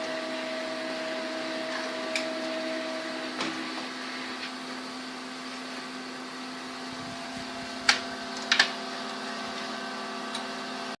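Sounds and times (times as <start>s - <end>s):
printer motor hum: 0.0s - 11.0s
printer clicks: 7.8s - 8.8s.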